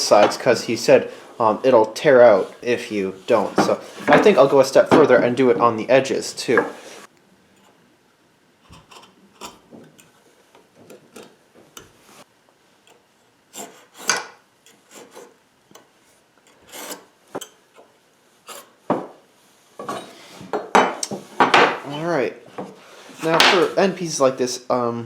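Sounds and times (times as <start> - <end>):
knife blade scraping wood: 13.5 - 15.4, 16.5 - 17.1.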